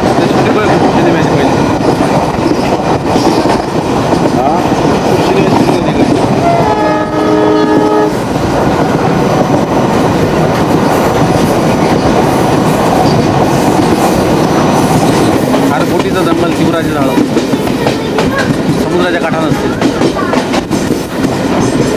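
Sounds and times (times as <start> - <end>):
train rumble and wheel clatter: 0.0 - 21.9
train horn chord: 6.4 - 8.2.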